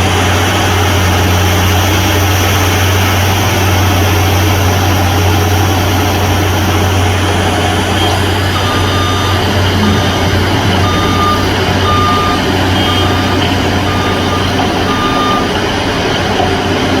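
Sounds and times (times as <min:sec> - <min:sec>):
diesel engine drone: 0:00.0 - 0:17.0
vehicle backup alarm beeping: 0:06.9 - 0:16.8.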